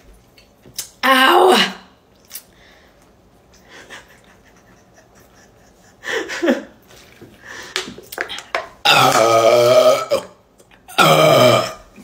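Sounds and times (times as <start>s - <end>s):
woman breathing: 2.5s - 3.9s, 7.3s - 8.5s.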